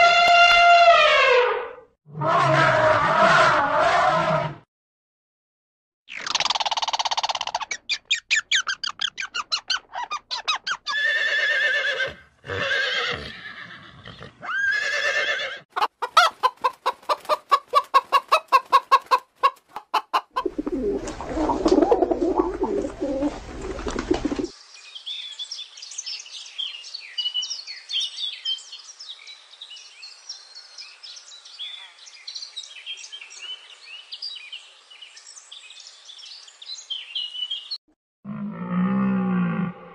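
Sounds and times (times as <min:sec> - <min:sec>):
hen cackling: 0:14.4 - 0:23.4.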